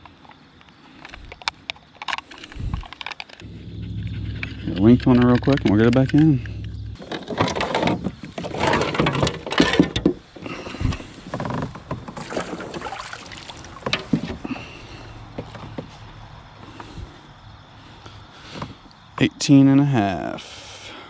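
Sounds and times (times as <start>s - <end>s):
fish handled with knocks and clatter: 7.0s - 15.9s.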